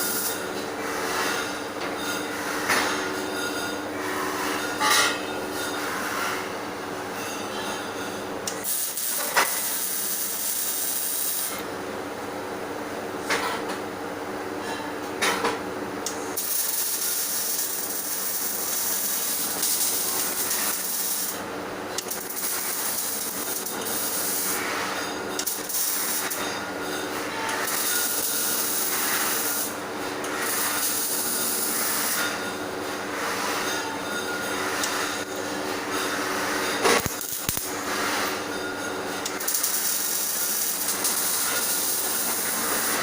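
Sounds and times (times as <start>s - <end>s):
welding arc crackling and hissing: 0.0s - 0.4s, 8.5s - 11.6s, 16.1s - 26.5s, 27.6s - 32.3s, 36.0s - 38.5s, 39.2s - 43.0s.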